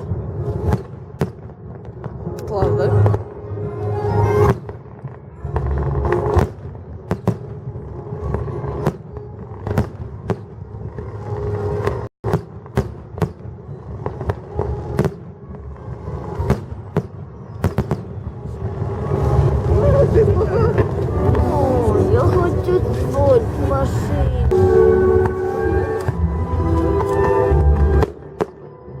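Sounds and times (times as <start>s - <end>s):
fireworks bangs and crackles: 0.0s - 29.0s
low rumble: 13.5s - 29.0s.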